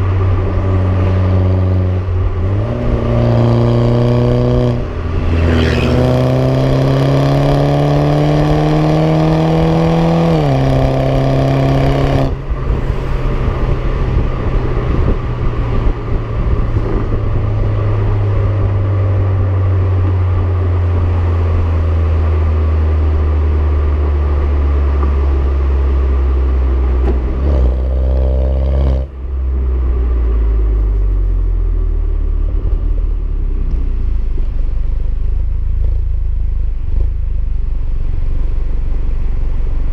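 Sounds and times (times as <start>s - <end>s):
car accelerating: 0.0s - 39.9s.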